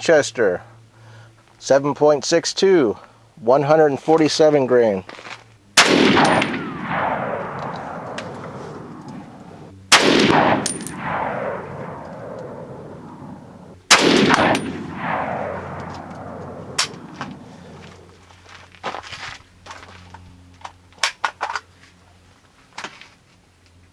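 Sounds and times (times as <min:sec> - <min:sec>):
rifle shots with echo: 0:05.8 - 0:18.1
sharp crack: 0:05.8 - 0:18.2.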